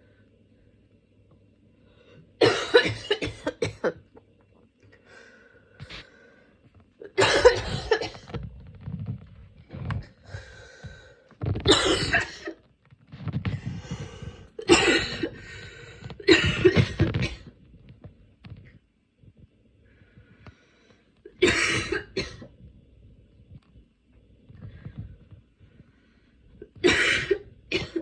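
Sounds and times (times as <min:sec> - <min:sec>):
woman coughing: 0:02.4 - 0:04.0, 0:07.0 - 0:08.4, 0:11.7 - 0:12.6, 0:14.6 - 0:15.5, 0:16.2 - 0:17.5, 0:21.3 - 0:22.4, 0:26.7 - 0:28.0.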